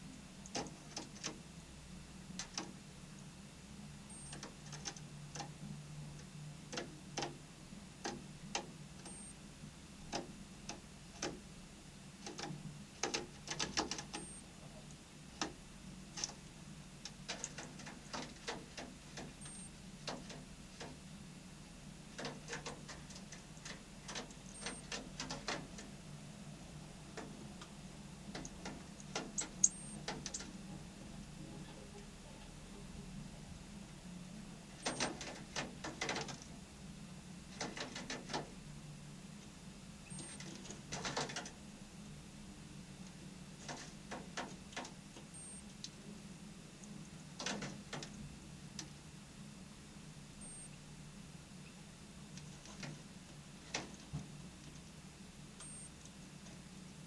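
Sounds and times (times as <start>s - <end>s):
faint low hum: 38.6s - 57.0s.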